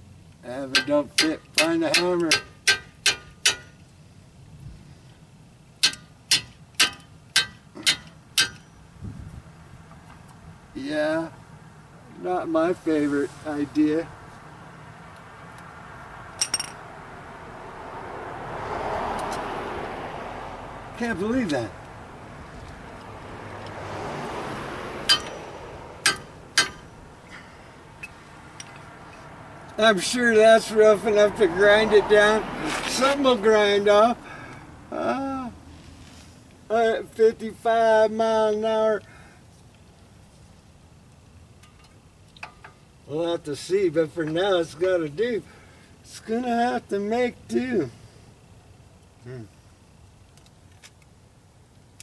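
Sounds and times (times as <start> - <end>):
hammer striking metal: 0.7 - 3.8, 5.8 - 8.8, 25.1 - 25.4, 26.0 - 26.9
metal tools clinking: 16.4 - 16.8, 28.0 - 29.3.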